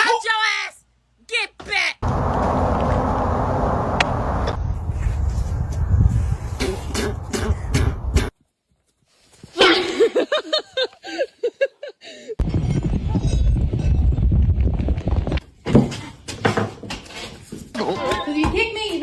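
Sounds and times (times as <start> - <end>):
low rumble: 2.0 - 8.2.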